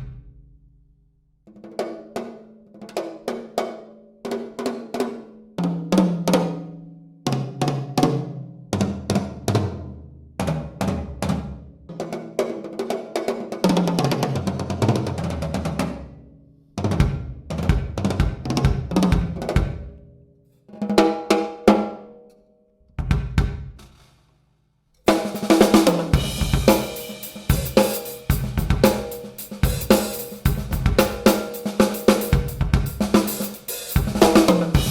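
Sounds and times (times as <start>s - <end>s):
drum kit playing: 16.8s - 19.9s, 23.0s - 24.2s, 25.0s - 34.9s
cymbals crashing: 33.5s - 34.9s.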